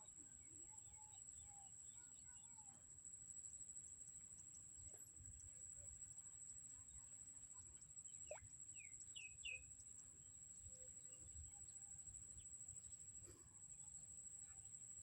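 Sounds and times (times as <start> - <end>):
faint bird chirps: 0.0 - 15.0.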